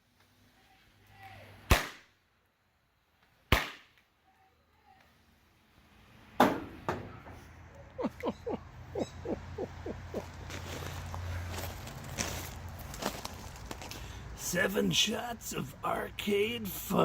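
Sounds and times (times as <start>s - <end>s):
firework sharp bangs: 1.6s - 2.2s, 3.5s - 4.0s.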